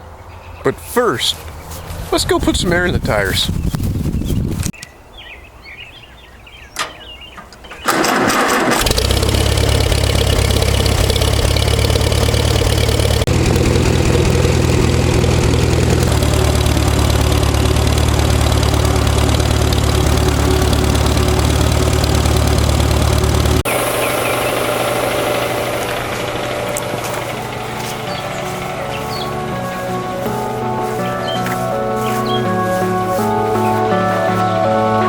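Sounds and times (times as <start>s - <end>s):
air compressor running: 7.9s - 29.3s.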